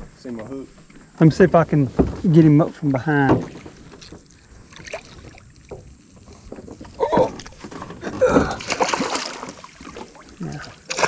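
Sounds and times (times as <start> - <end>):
gear knocking in a boat: 1.5 - 10.1
fish splashing in water: 3.5 - 5.9, 7.2 - 11.0.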